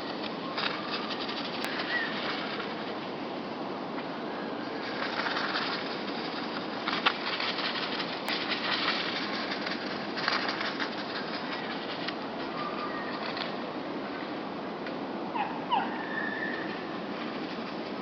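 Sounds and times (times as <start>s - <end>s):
bird wings flapping: 0.0s - 3.0s, 4.7s - 13.7s, 16.6s - 18.0s.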